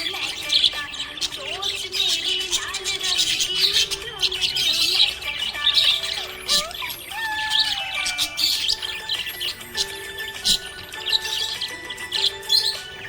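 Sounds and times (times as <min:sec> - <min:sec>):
faint background music: 0:00.0 - 0:13.0
parrots chirping and chattering: 0:00.0 - 0:13.0
parrot gliding whistles: 0:04.4 - 0:13.0.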